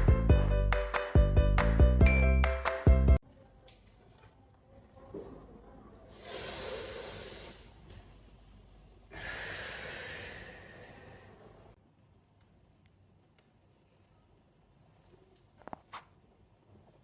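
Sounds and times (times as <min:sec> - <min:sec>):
person breathing deeply: 0:06.2 - 0:07.8, 0:09.1 - 0:11.6.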